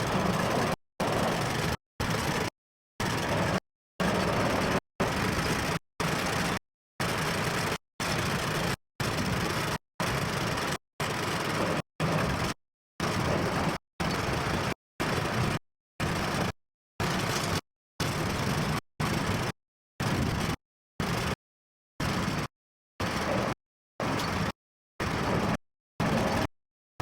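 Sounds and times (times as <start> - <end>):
tractor engine running: 0.0 - 12.5.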